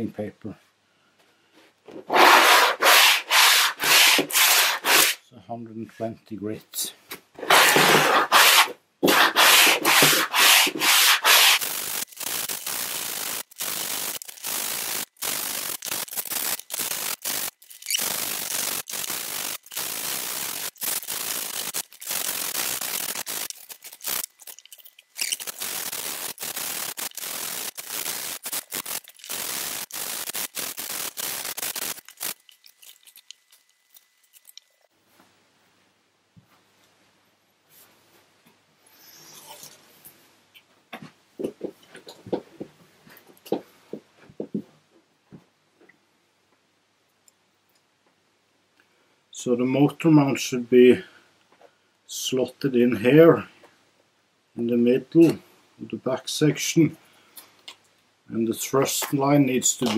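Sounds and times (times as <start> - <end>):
sanding foam back and forth: 2.1 - 5.2, 7.4 - 24.3.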